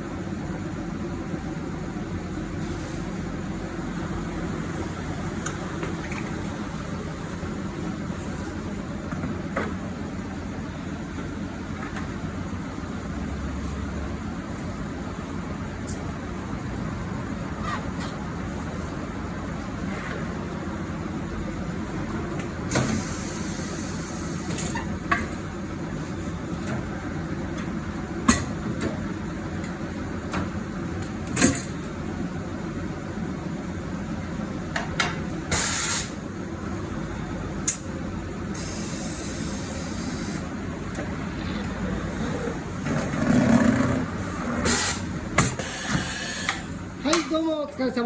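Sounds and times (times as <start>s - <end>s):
steady background hum: 0.0s - 48.0s
air hissing: 22.7s - 24.5s, 35.5s - 36.2s, 38.5s - 40.5s, 44.6s - 46.8s.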